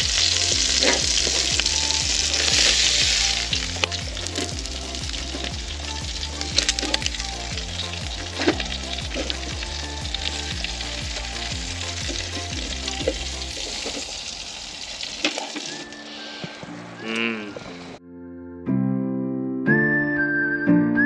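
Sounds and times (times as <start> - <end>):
background music with bass line: 0.0 - 14.2
food sizzling on hotplate: 0.0 - 16.6.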